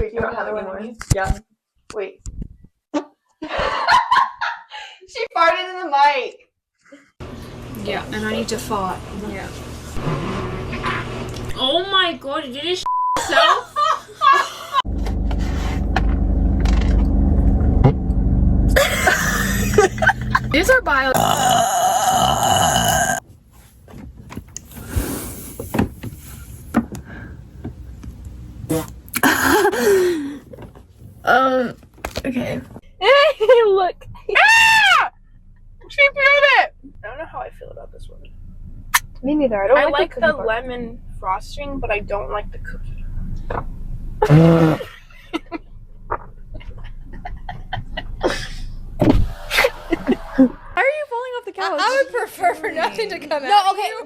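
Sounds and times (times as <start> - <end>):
loud burp: 18.8 - 19.8, 21.1 - 23.2, 28.7 - 29.8, 44.2 - 44.9
person passing gas: 18.8 - 19.8, 21.2 - 23.2, 28.7 - 30.5, 44.2 - 44.9.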